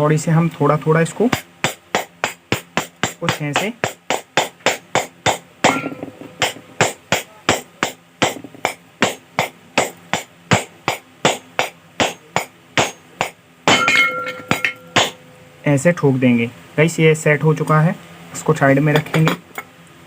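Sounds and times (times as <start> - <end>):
small hammer tapping metal: 1.3 - 15.3
ringing metal taps: 5.6 - 9.2, 11.5 - 15.4.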